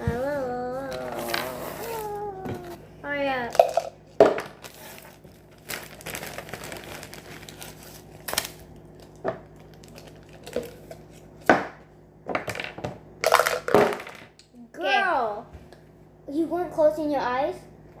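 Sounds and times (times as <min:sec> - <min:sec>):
plastic packaging crinkling: 0:04.5 - 0:11.2.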